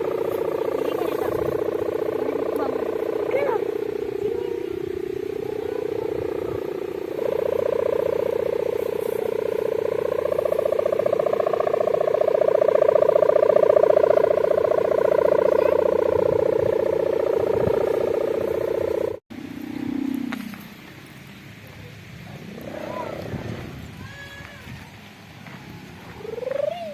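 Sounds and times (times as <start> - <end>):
kite hummer droning in wind: 0.0 - 26.9.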